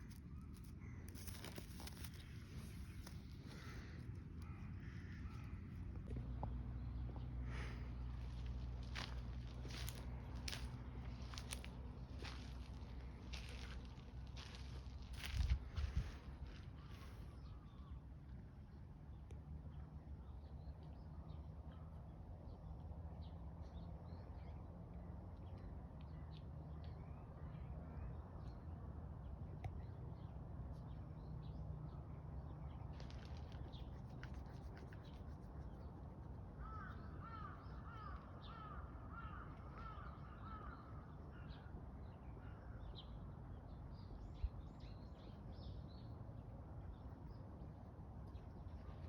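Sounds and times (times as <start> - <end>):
steady low rumble: 0.0 - 19.1.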